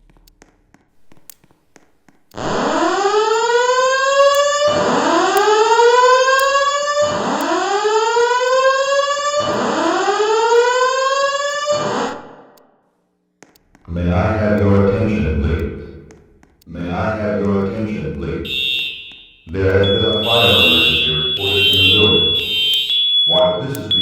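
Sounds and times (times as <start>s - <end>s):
rising electronic alarm sweep: 2.4s - 12.4s, 18.4s - 24.0s.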